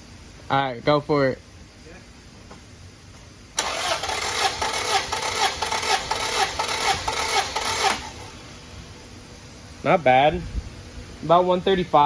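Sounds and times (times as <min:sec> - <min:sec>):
starter cranking engine: 0:03.6 - 0:08.4.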